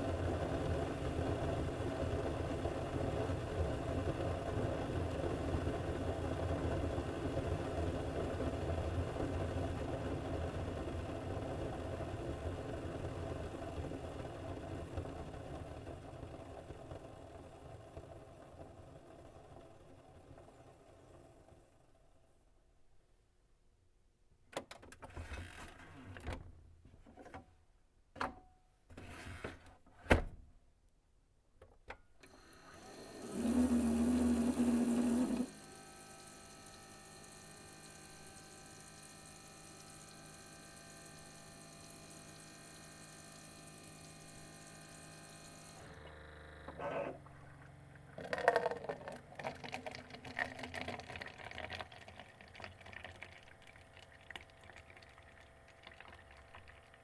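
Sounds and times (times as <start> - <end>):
coffee maker humming: 0.0 - 22.2, 32.2 - 57.0
pump buzzing: 32.2 - 57.0
water gurgling and spluttering: 47.2 - 57.0.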